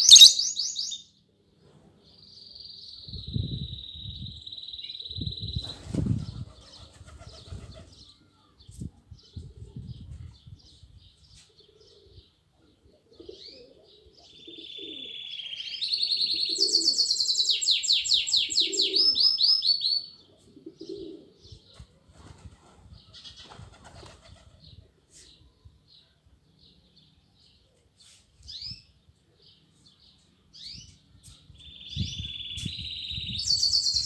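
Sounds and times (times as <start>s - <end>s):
cage bird singing: 0.0s - 1.1s, 2.1s - 5.6s, 14.2s - 20.3s, 28.5s - 34.0s
doves cooing: 20.3s - 21.4s.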